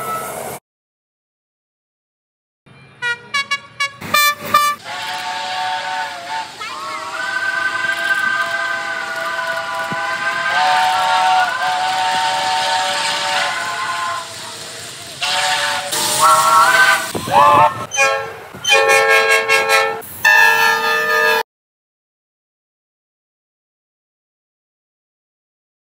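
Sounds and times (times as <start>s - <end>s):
train horn chords: 3.0s - 14.6s, 15.2s - 21.4s.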